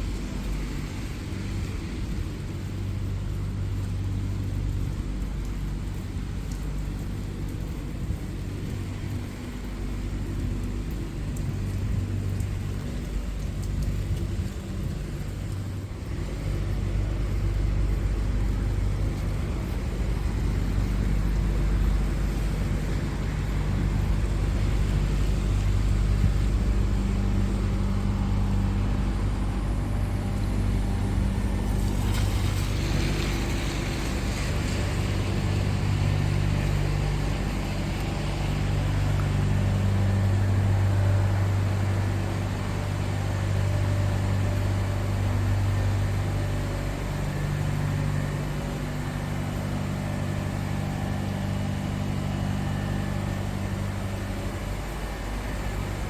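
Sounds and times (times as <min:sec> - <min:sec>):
car engine humming: 0:17.9 - 0:56.0.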